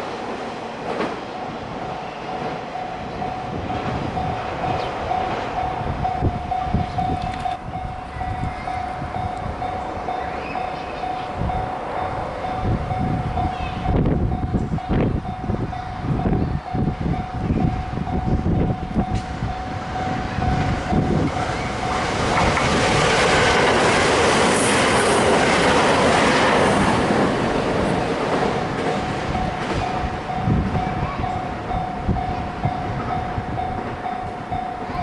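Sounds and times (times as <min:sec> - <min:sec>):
crossing warning bell ringing: 0:01.2 - 0:35.0
train wheels clacking over rails: 0:17.2 - 0:35.0.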